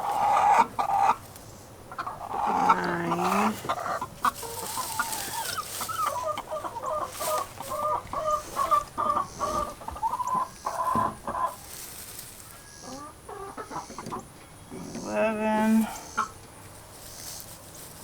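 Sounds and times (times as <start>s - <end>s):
hens clucking: 0.0s - 17.7s.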